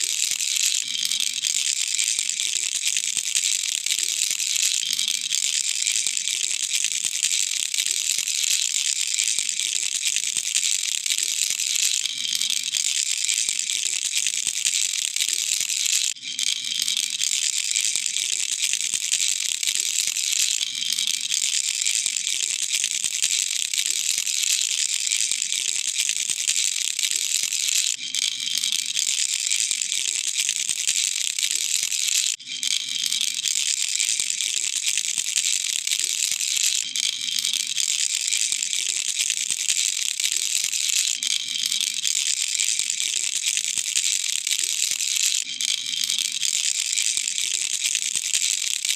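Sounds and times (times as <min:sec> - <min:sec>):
baby rattle shaking: 0:00.0 - 0:48.9.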